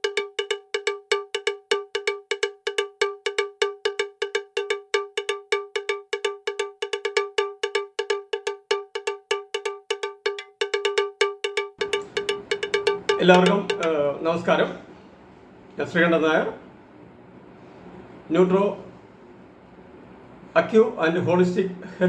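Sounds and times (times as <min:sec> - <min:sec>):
bell-like percussion strikes: 0:11.8 - 0:14.0.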